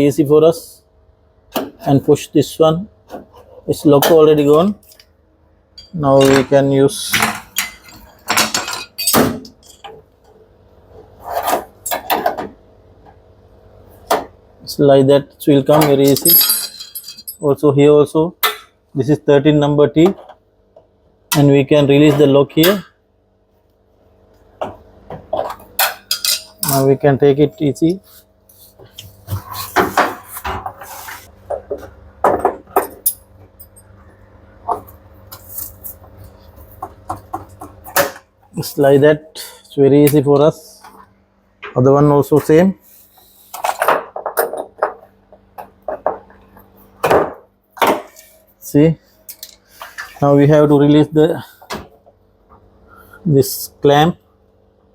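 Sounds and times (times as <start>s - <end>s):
metal clinking and scraping: 16.0s - 17.4s.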